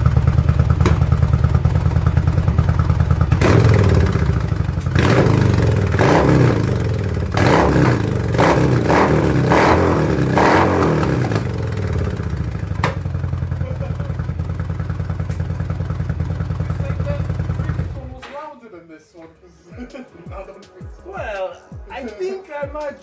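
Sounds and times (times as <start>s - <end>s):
motorcycle engine idling and revving: 0.0s - 18.2s.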